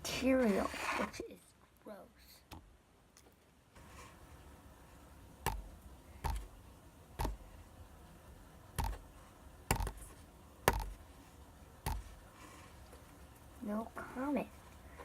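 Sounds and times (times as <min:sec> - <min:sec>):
short taps with dull thumps: 0:05.4 - 0:06.5, 0:07.2 - 0:07.4, 0:09.7 - 0:11.0, 0:11.8 - 0:12.1.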